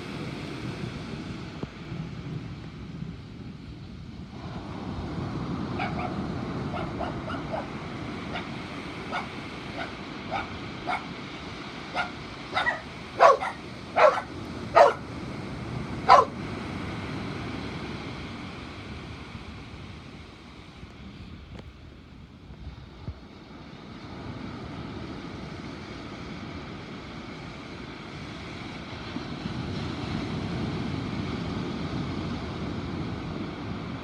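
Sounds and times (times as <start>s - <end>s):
dog barking: 5.8s - 11.2s, 11.9s - 15.1s, 16.0s - 16.4s
low rushing background: 5.8s - 17.0s.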